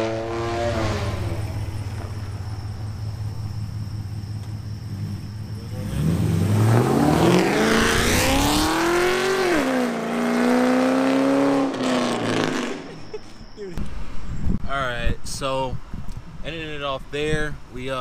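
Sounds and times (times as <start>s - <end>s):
car engine idling and revving: 0.0s - 13.0s.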